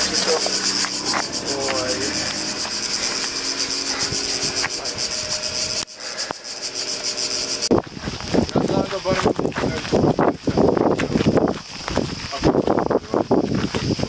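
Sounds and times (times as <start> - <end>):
car engine running: 0.0 - 9.9
cicadas buzzing: 0.0 - 14.0.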